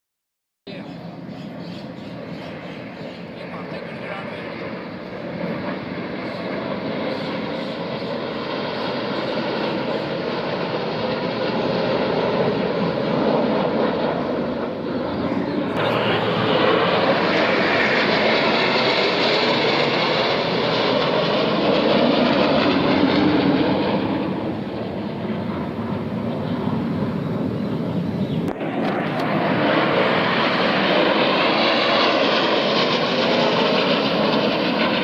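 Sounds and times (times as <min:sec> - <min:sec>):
jet aircraft flying past: 0:00.7 - 0:35.0.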